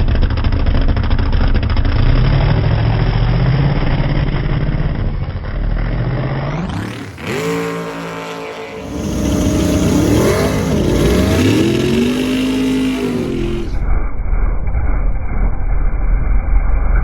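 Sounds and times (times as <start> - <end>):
drag racing car engine revving: 0.0 - 13.9.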